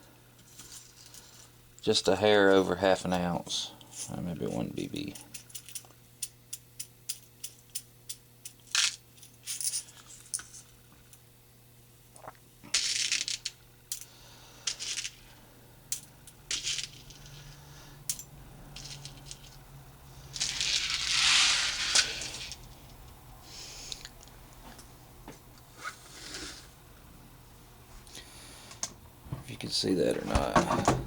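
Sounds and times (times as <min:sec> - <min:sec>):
shot pellets rattling: 0:12.7 - 0:13.6, 0:15.9 - 0:19.6, 0:20.3 - 0:22.7.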